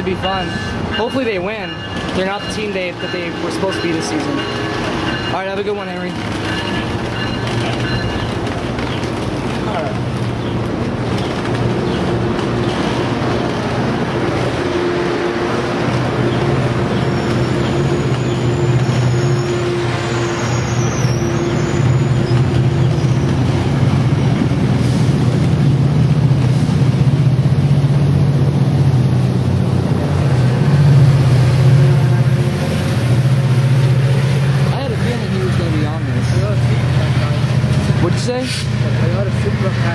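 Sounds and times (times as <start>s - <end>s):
large diesel engine running: 20.6s - 39.9s.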